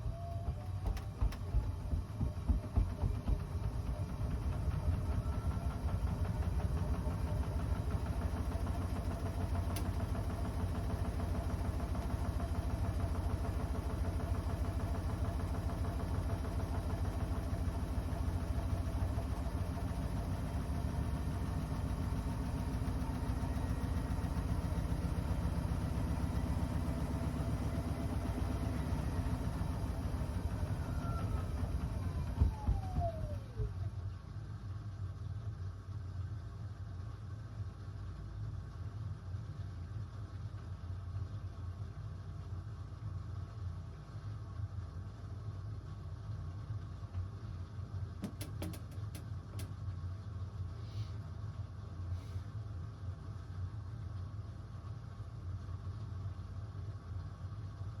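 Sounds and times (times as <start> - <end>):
washing machine running: 0.0 - 34.0.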